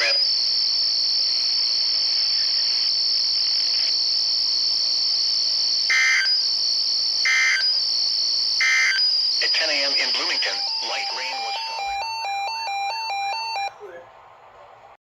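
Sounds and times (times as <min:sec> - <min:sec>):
insect chirring: 0:00.0 - 0:11.7.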